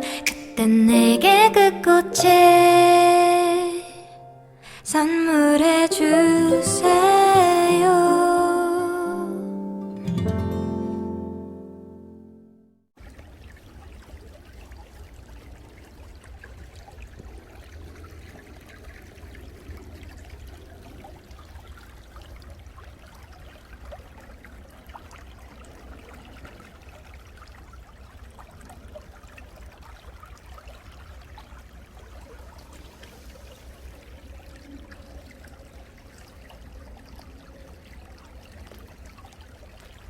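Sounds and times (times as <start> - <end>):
water trickling in stream: 13.0 - 40.0.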